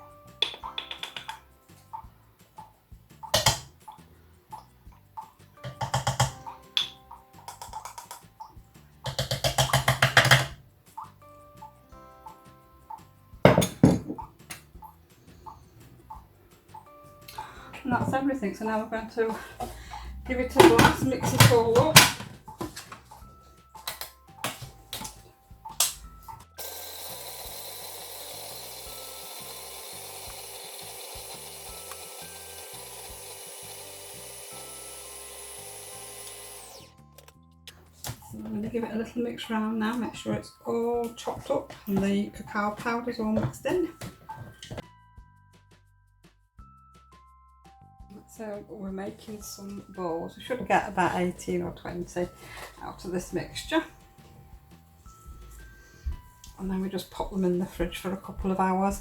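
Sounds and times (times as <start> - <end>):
light percussive music: 0.0 - 59.0
knocks and clicks: 0.4 - 1.5, 3.2 - 3.9, 5.6 - 10.6, 20.4 - 26.5
food processor chopping nuts: 25.8 - 37.3.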